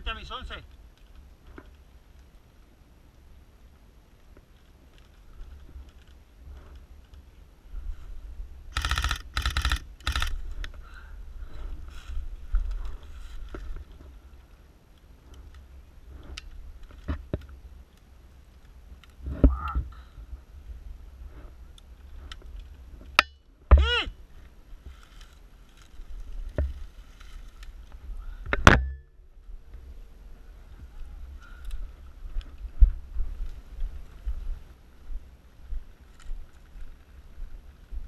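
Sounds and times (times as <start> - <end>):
airsoft gun firing bursts: 8.7 - 10.3
rustling handling noise: 11.4 - 19.3, 24.3 - 28.1.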